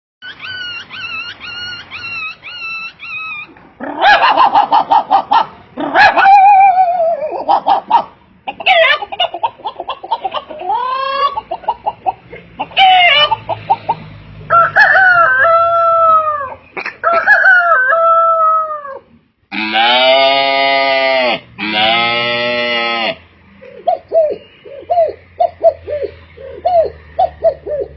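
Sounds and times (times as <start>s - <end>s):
person imitating crowing: 5.8s - 7.5s, 14.5s - 23.2s
person imitating bleats: 19.5s - 23.2s.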